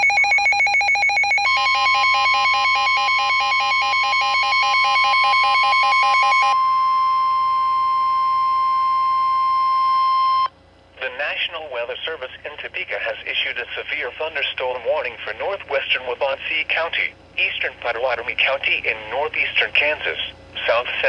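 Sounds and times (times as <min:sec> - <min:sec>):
steady warning alarm tone: 0:00.0 - 0:10.5.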